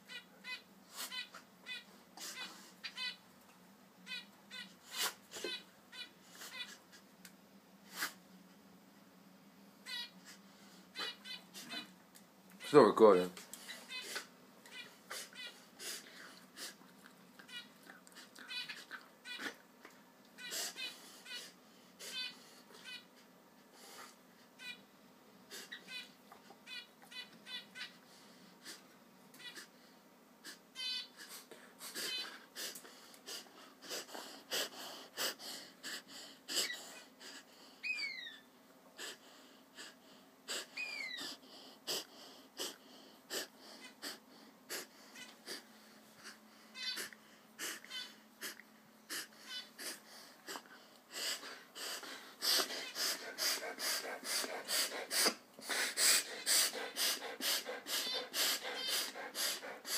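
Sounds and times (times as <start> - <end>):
dog reverse sneezing: 7.9 - 8.2.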